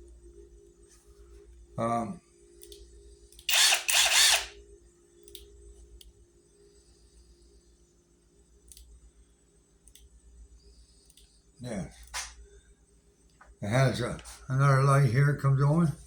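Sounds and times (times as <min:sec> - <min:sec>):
impact wrench motor whirring: 0:03.5 - 0:04.6
faint clicks: 0:11.0 - 0:11.4.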